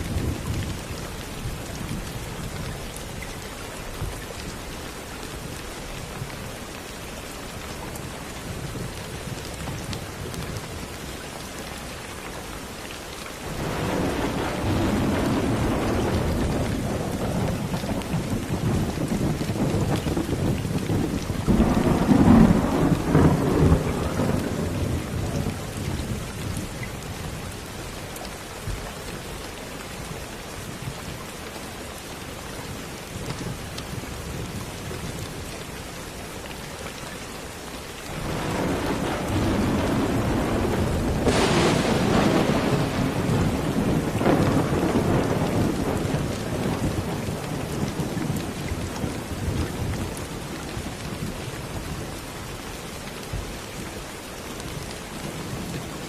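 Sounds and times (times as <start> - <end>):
steady rain: 0.0 - 56.0
thunder rumbling: 13.5 - 27.4, 38.1 - 50.2
sharp thunder crack: 13.6 - 25.1, 38.1 - 47.1.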